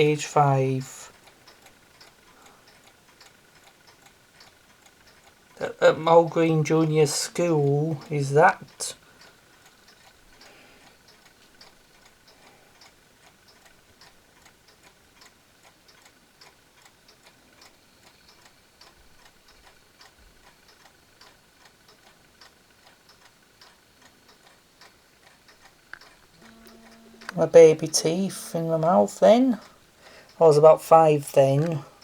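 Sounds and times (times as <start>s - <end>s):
mechanical clock ticking: 0.0s - 32.0s.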